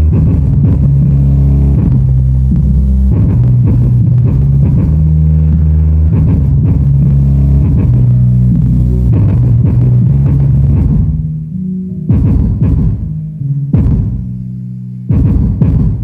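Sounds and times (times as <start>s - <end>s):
bass-heavy song through subwoofers: 0.0s - 16.0s.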